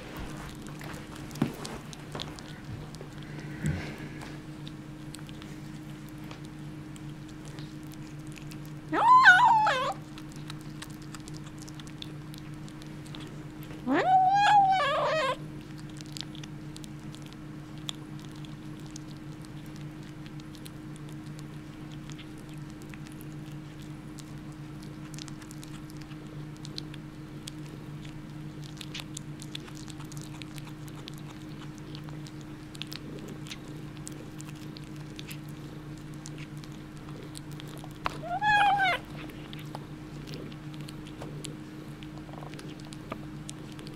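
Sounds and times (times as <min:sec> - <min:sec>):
kitten gnawing on a bone: 0:00.0 - 0:43.9
steady low hum: 0:00.0 - 0:43.9
cat cry: 0:08.9 - 0:10.0, 0:13.9 - 0:15.4, 0:38.2 - 0:39.0.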